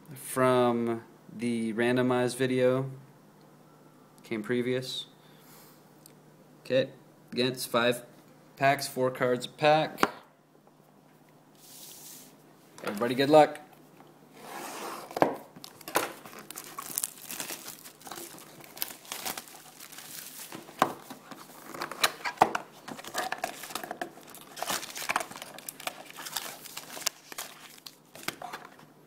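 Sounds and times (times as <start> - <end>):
plastic wrap crackling and crinkling: 15.5 - 28.8.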